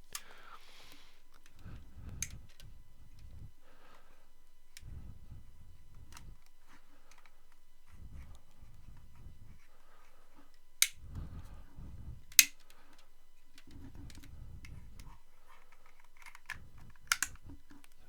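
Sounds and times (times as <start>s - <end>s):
sharp clicks: 0.0s - 4.0s, 10.5s - 18.0s.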